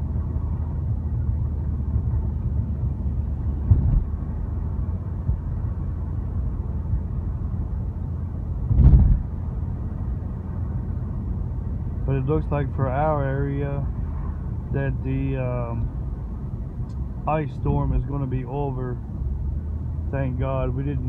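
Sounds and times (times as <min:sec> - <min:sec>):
car driving rumble inside cabin: 0:00.0 - 0:21.0
thump: 0:03.7 - 0:04.1, 0:08.7 - 0:09.3.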